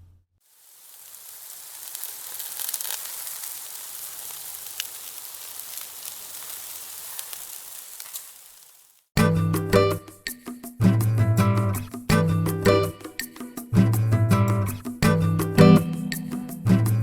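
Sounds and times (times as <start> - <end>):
bacon sizzling on a griddle: 0.4 - 9.1
sharp pops and crackles: 0.4 - 9.1.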